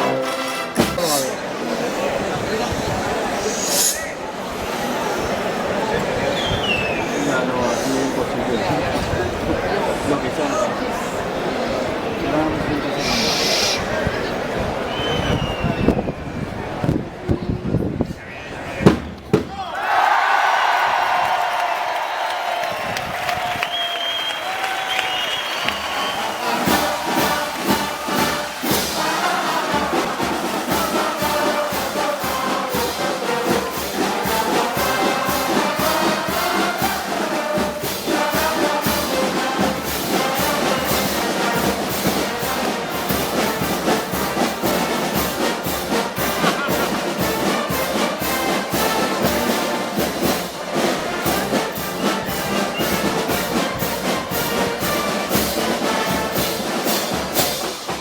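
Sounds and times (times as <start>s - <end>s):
brass band playing a march: 0.0s - 2.3s, 23.5s - 58.0s.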